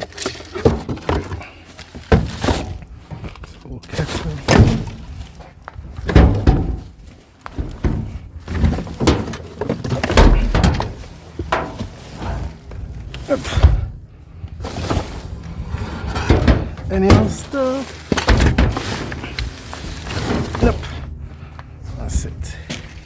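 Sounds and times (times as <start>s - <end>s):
heavy thuds: 4.4s - 23.0s
scrap knocking in a dumpster: 6.0s - 6.9s, 7.6s - 12.6s, 14.6s - 21.0s.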